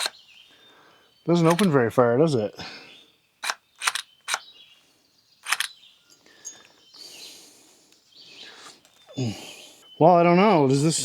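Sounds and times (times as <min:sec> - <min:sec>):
sharp clicks: 0:01.4 - 0:01.8, 0:03.4 - 0:04.4, 0:05.4 - 0:05.7.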